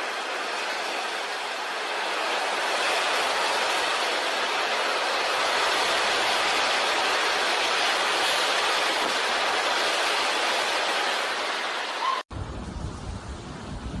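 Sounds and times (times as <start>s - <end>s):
strong wind and rain rushing: 0.0s - 14.0s
wind buffeting microphone: 12.3s - 14.0s.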